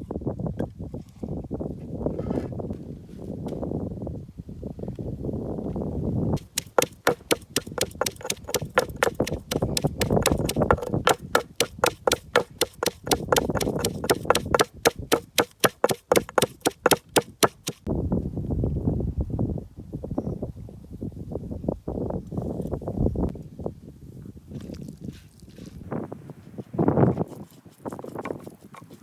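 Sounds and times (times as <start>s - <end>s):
knife chopping on cutting board: 6.4s - 17.8s.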